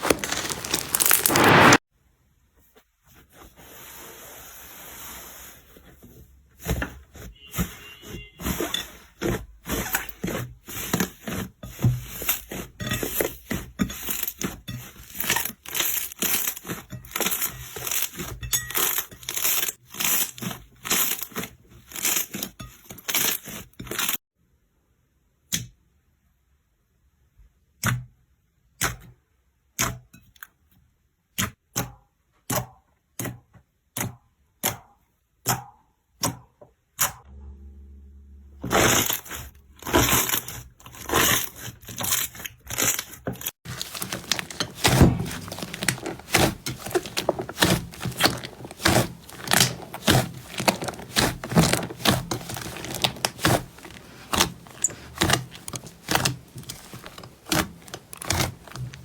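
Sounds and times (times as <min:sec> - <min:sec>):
slime crackling and popping: 0:00.0 - 0:01.8, 0:43.7 - 0:59.0.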